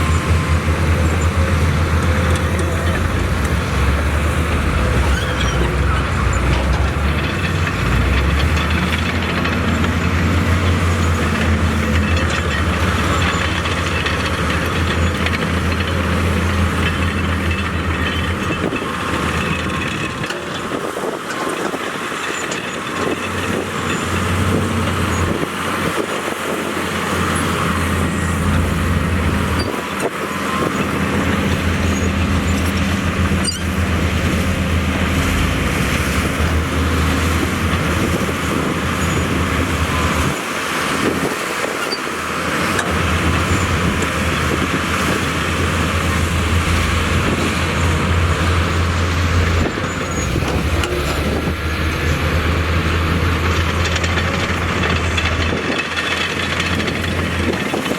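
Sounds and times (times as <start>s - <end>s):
diesel machinery engine: 0.0s - 57.9s.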